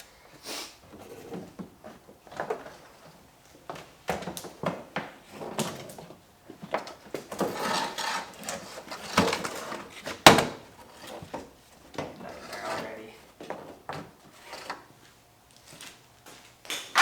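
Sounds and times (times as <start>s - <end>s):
car trim parts clunking and scraping: 3.8s - 15.0s.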